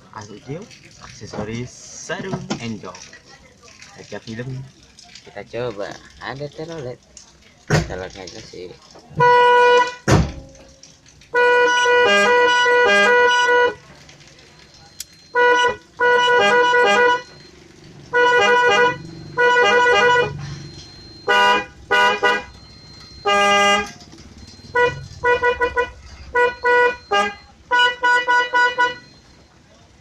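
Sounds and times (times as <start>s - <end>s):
melodic multi-tone horn toots: 11.3s - 13.8s, 15.3s - 29.2s.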